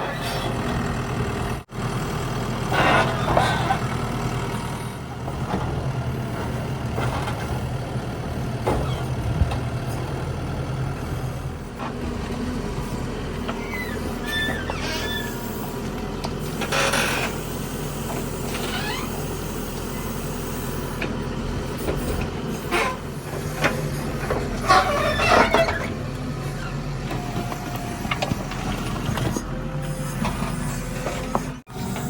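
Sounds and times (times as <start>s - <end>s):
diesel engine running: 0.0s - 32.0s.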